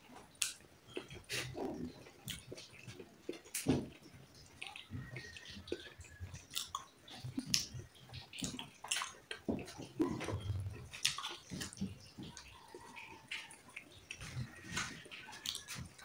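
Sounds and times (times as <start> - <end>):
person chewing and biting: 8.4 - 11.9.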